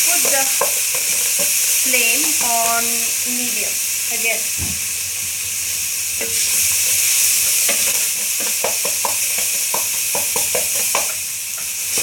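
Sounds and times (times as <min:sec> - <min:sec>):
spoon scraping a pan: 0:00.0 - 0:02.5, 0:07.4 - 0:12.0
onions sizzling in hot oil: 0:00.0 - 0:12.0.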